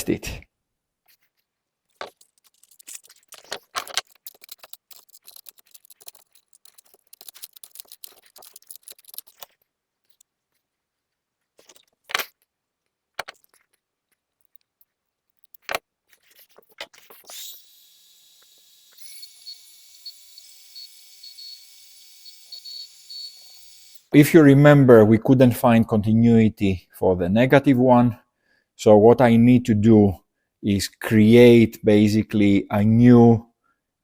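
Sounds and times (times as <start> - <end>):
small clicks and rustles: 1.1 - 17.3.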